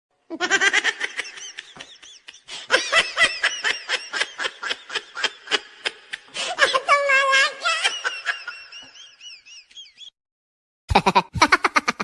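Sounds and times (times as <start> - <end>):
person laughing high-pitched: 10.9 - 12.0.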